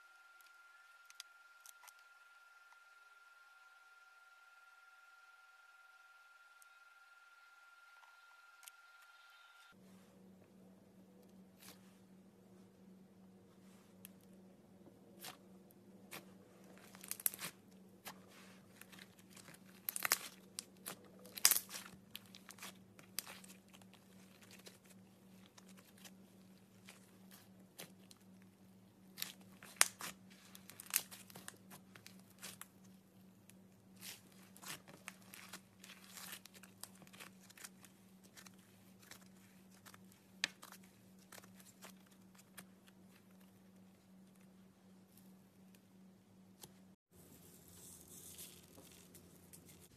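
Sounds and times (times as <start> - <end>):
low electrical hum: 0.0 - 49.9
slime crackling and popping: 16.8 - 17.6, 18.8 - 26.2, 29.2 - 32.7.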